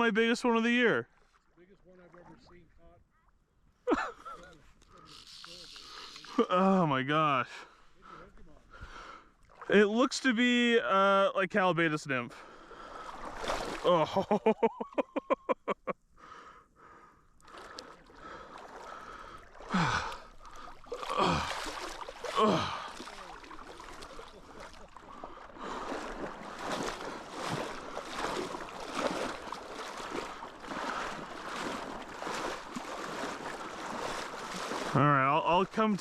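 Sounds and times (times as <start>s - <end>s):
man gasping and exclaiming: 19.7s - 20.3s, 21.0s - 21.7s, 22.3s - 23.1s.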